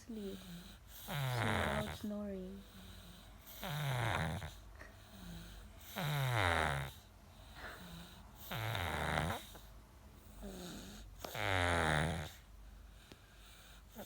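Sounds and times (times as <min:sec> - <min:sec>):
person snoring loudly: 0:00.2 - 0:07.0, 0:07.7 - 0:09.5, 0:10.4 - 0:12.4.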